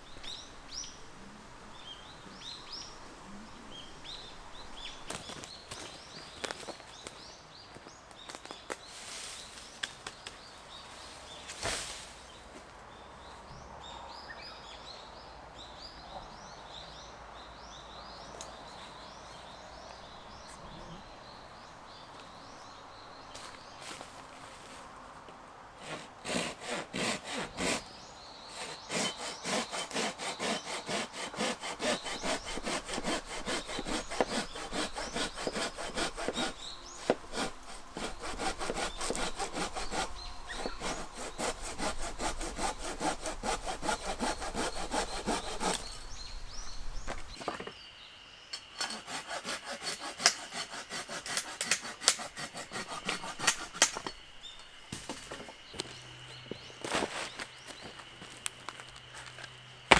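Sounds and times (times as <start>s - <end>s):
hand saw cutting wood: 25.8s - 27.9s, 28.5s - 46.3s, 48.7s - 58.3s.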